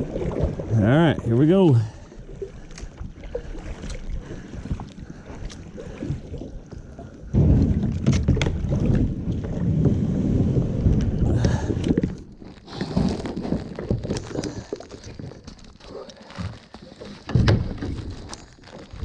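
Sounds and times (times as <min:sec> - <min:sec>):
paddle splashing in water: 0:00.0 - 0:19.0
wind buffeting microphone: 0:07.3 - 0:12.3.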